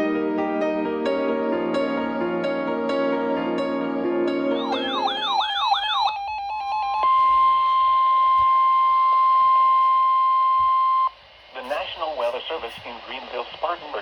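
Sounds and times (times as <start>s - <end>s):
warbling tone: 4.6s - 7.6s
stuttering electronic chatter: 4.6s - 7.9s, 11.5s - 14.0s
steady piercing electronic alarm tone: 4.6s - 12.4s.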